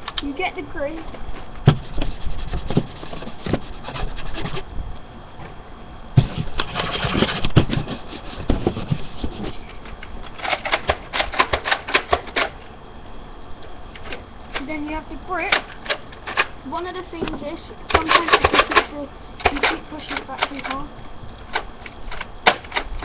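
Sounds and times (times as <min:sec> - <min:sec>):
plastic parts clicking and rattling: 0:09.9 - 0:12.6, 0:17.9 - 0:20.9, 0:21.5 - 0:23.0
sharp plastic clicks: 0:10.0 - 0:12.6, 0:15.5 - 0:16.5, 0:17.3 - 0:20.8, 0:21.4 - 0:23.0.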